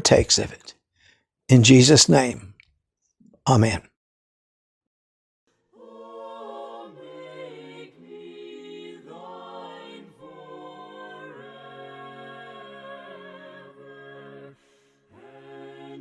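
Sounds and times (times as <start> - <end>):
choir singing a hymn: 5.7 - 16.0.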